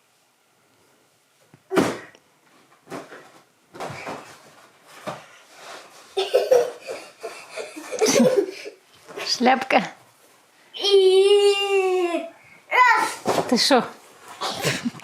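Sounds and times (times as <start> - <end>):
child's voice: 10.8 - 13.2.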